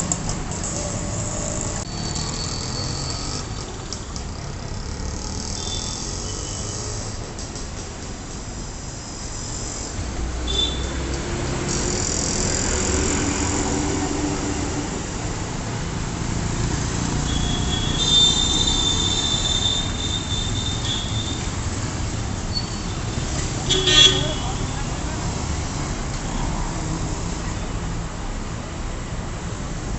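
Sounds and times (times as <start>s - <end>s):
road traffic: 0.0s - 29.9s
high-pitched squeal: 0.6s - 3.9s.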